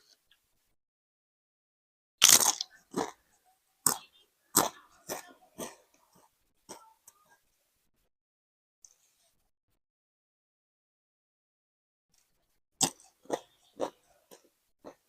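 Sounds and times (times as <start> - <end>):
crunching chews: 2.2 - 3.2, 12.8 - 15.0
loud bite: 2.2 - 3.2, 12.8 - 14.0.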